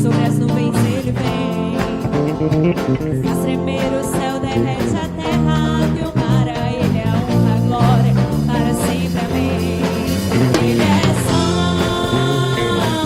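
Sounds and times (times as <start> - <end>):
worship band playing: 0.0 - 13.0
people singing: 3.4 - 13.0.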